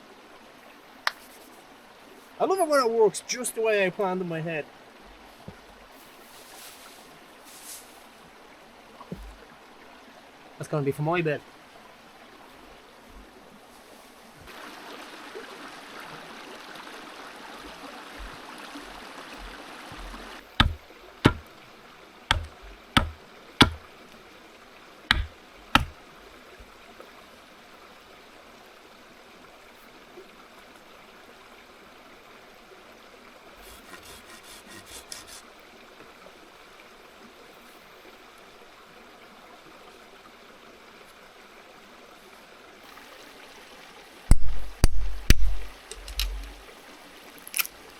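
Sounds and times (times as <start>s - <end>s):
river running: 0.0s - 47.9s
fast rasp: 19.4s - 21.4s, 22.3s - 23.8s, 25.1s - 26.0s, 33.6s - 35.4s
knocks of wood being struck: 19.4s - 21.5s, 22.3s - 23.9s, 25.1s - 26.0s, 44.3s - 46.6s.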